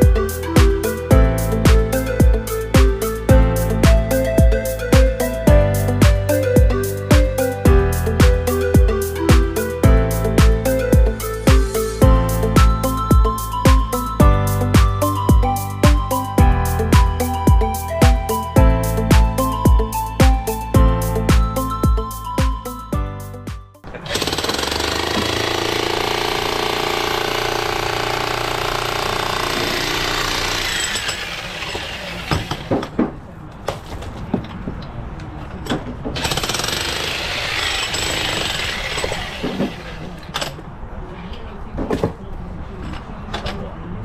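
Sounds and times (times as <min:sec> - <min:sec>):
music: 0:00.0 - 0:23.9
jackhammer hammering stone: 0:23.9 - 0:32.8, 0:36.2 - 0:39.9.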